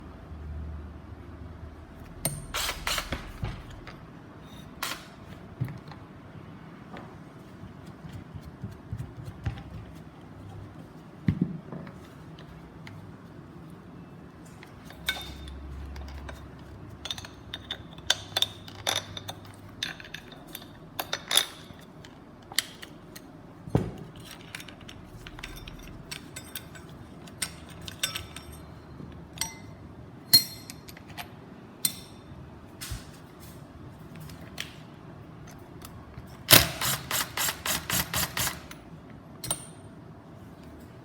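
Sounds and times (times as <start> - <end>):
metal tool parts clinking: 24.2 - 28.8, 30.3 - 32.2.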